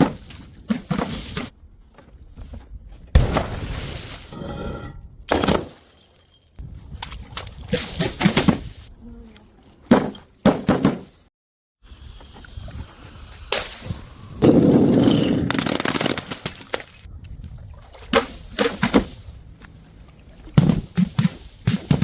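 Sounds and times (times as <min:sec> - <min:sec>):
objects cracking: 0:14.8 - 0:17.1.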